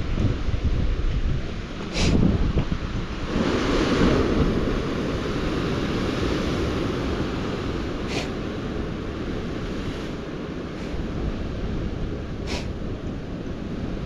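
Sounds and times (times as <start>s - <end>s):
steady rushing noise: 0.0s - 14.0s
wind buffeting microphone: 0.0s - 14.0s.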